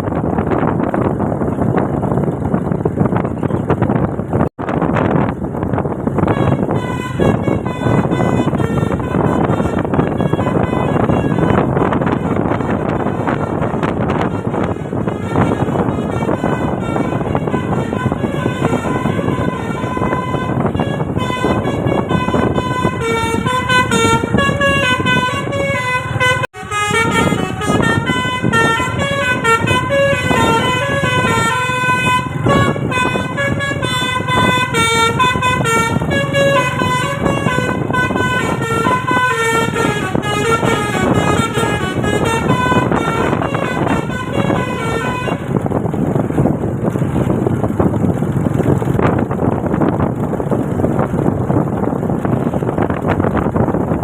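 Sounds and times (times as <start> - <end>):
bus running noise: 0.0 - 54.0
musical bus air horn melody: 6.1 - 46.5.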